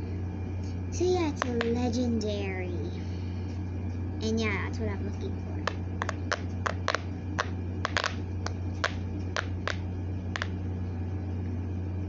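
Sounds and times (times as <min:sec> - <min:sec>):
steady low hum: 0:00.0 - 0:12.0
plastic toys clicking and popping: 0:05.7 - 0:09.8.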